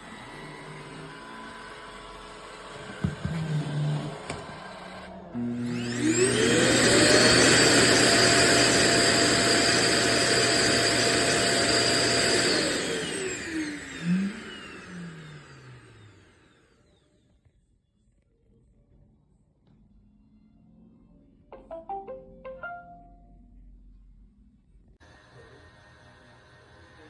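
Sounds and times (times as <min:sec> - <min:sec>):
vacuum motor whine: 0:00.0 - 0:17.4, 0:25.0 - 0:27.0.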